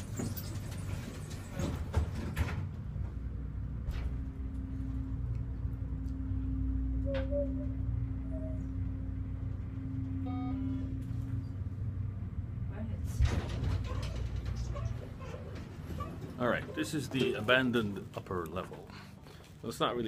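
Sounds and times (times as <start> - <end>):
elevator motor hum: 0.0 - 19.4
elevator chime: 6.4 - 11.6.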